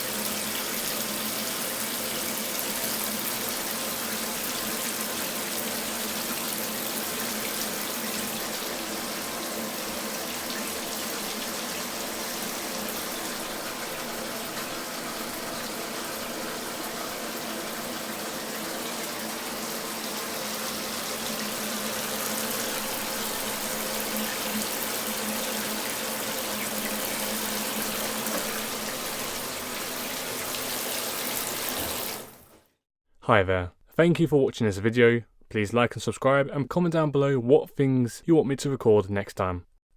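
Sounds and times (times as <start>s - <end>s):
shower running: 0.0s - 32.7s.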